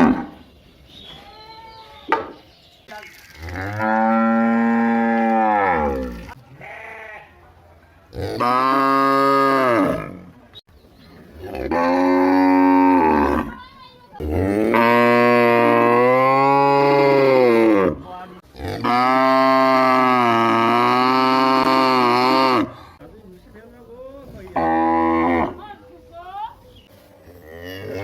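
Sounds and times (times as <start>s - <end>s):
cow mooing: 3.5s - 7.2s, 11.4s - 13.6s, 14.2s - 18.0s, 18.6s - 22.8s.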